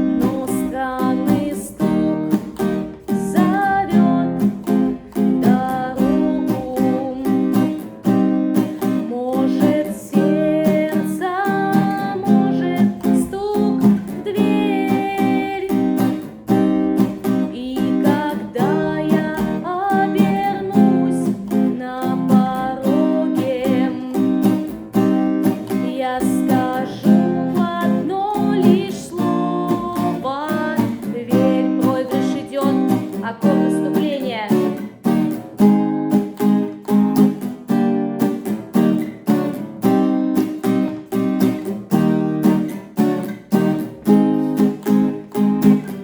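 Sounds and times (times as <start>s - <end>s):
woman singing: 0.0s - 35.5s
acoustic guitar strumming: 0.0s - 46.0s.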